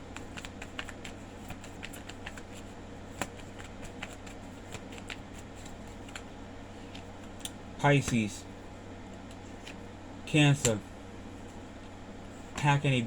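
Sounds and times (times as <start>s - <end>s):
faint steady hum: 0.0s - 13.0s
cards shuffling: 0.2s - 6.2s.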